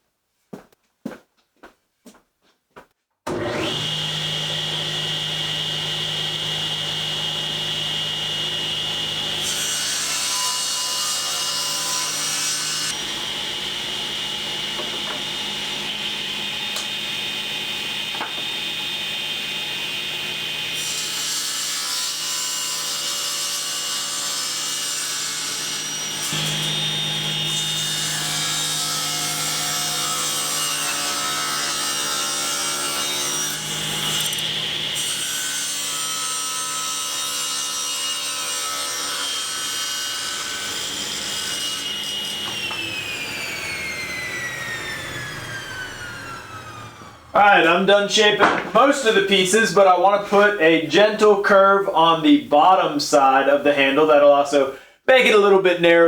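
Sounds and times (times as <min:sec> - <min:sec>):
table saw cutting wood: 0:03.3 - 0:54.2.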